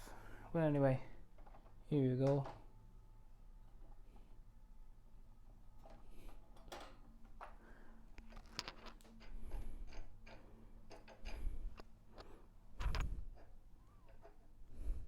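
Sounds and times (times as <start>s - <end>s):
plastic and metal parts clicking: 8.2s - 14.4s.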